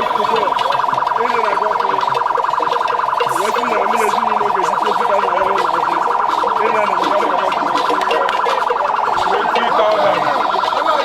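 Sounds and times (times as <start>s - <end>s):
high-pitched pulsing alarm tone: 0.0s - 11.0s
people talking: 0.0s - 11.0s.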